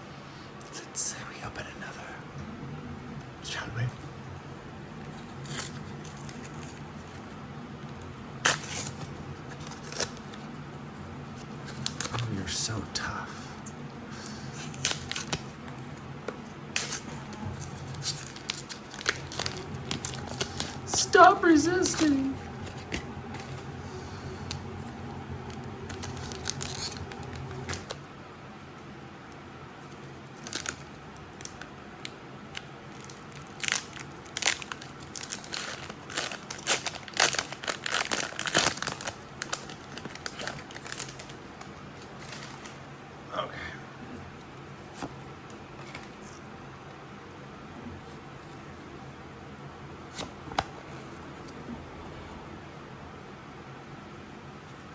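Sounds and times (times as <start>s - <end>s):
foil wrapper crinkling: 5.2s - 7.2s, 8.3s - 10.5s, 11.4s - 12.4s, 14.2s - 15.8s, 16.7s - 23.7s, 24.4s - 28.0s, 29.9s - 31.8s, 32.5s - 42.8s.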